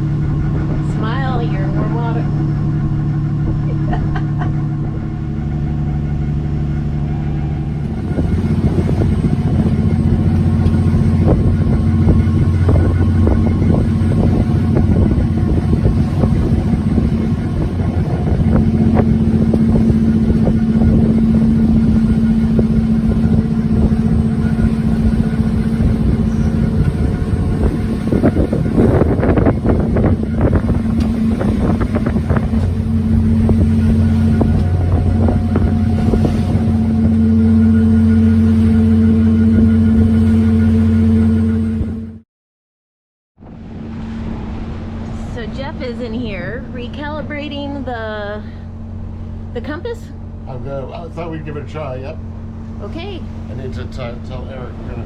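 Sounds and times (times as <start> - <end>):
boat diesel engine drone: 0.0 - 42.2, 43.4 - 55.0.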